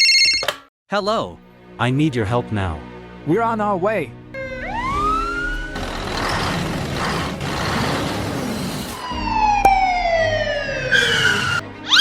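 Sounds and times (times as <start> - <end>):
siren tone gliding downward: 4.4 - 6.0, 9.0 - 12.0.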